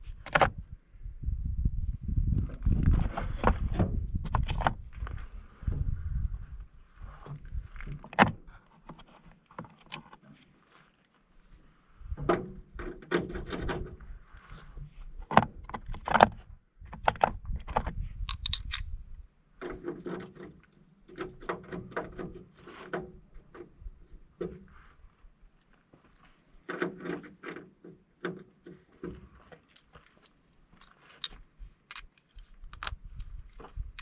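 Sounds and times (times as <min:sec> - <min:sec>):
metal parts clinking and rattling: 0:18.2 - 0:18.9, 0:30.0 - 0:33.2.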